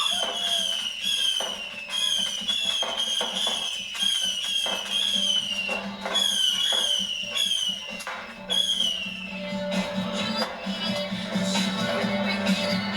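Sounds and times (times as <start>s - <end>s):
firework pops: 0.0s - 9.0s
whistling fireworks: 0.0s - 11.0s.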